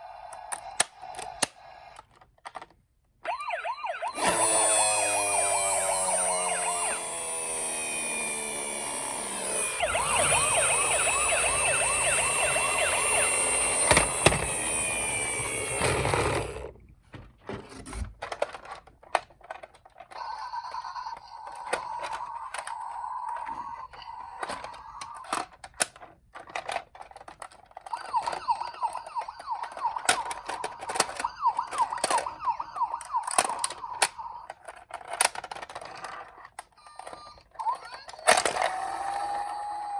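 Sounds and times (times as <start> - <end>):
toy electronic siren wailing: 3.2 - 16.6, 20.1 - 25.4, 27.7 - 34.6, 36.8 - 39.9.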